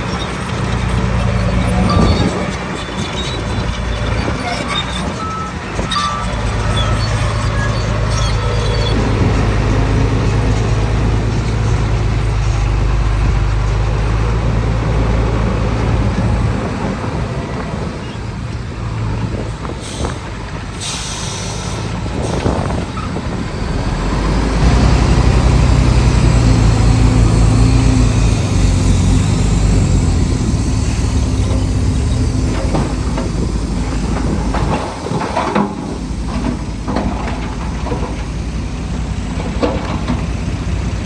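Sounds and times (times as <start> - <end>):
heavy diesel engines running: 0.0 - 41.0
short air hisses: 20.8 - 22.4.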